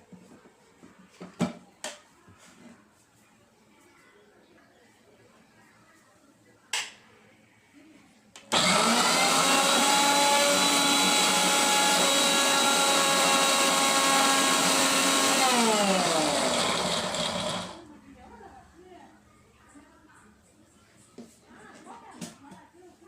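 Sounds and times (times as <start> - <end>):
mixer grinder motor whining: 8.5 - 17.8.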